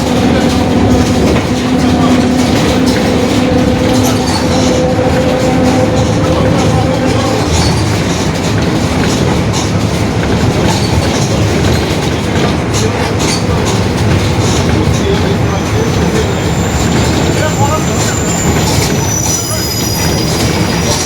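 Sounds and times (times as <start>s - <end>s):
whining tone: 0.0s - 9.3s
bus engine and road noise: 0.0s - 21.0s.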